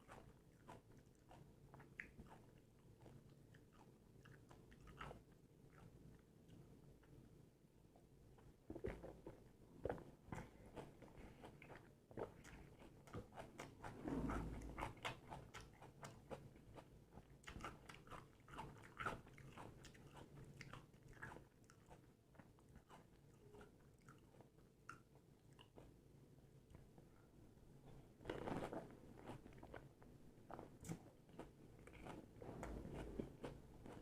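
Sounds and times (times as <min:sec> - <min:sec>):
wet chewing: 0:00.0 - 0:06.6, 0:08.7 - 0:25.9.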